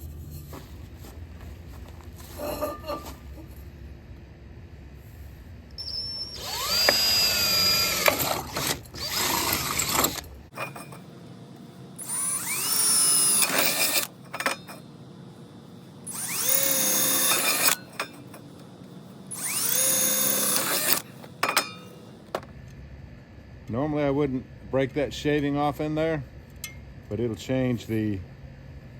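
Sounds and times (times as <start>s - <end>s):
electric drill drilling through metal: 5.8s - 10.3s, 12.0s - 14.1s, 16.1s - 17.8s, 19.3s - 21.1s.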